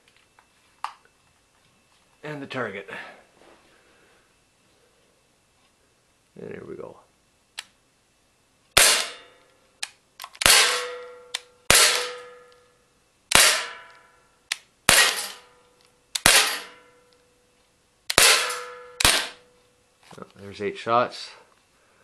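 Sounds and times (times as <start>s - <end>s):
air pistol shots: 8.8s - 9.4s, 10.4s - 12.4s, 13.3s - 13.9s, 14.9s - 15.4s, 16.2s - 16.8s, 18.1s - 19.4s
pellets ringing on metal: 14.9s - 15.5s, 16.3s - 16.9s, 18.2s - 19.4s.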